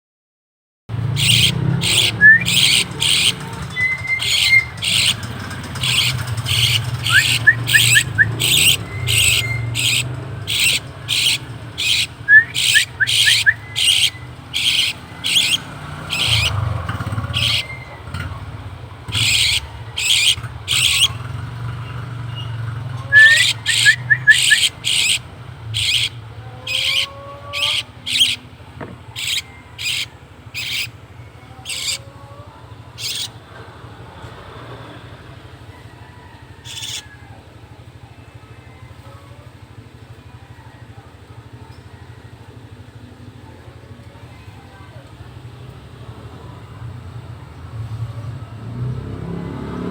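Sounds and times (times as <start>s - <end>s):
birds harsh rasping calls: 1.1s - 49.9s
quick high bird chirps: 1.2s - 16.6s, 17.3s - 17.9s, 19.1s - 21.2s, 23.1s - 28.4s, 29.2s - 31.0s, 33.0s - 33.3s, 36.7s - 37.0s.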